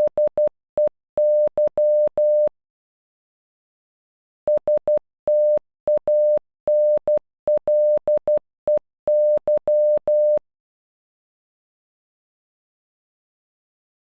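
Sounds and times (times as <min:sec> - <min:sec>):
morse code beeps: 0:00.0 - 0:02.5, 0:04.5 - 0:10.4.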